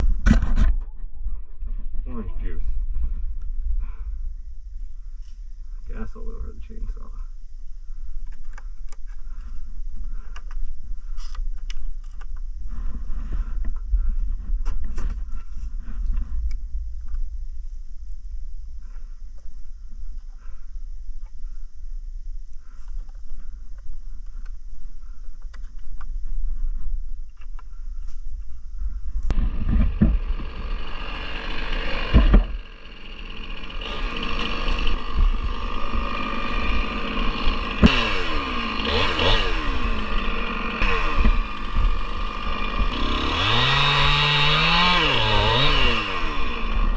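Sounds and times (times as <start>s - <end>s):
low rumble: 0.0s - 30.5s
chainsaw revving: 29.3s - 46.9s.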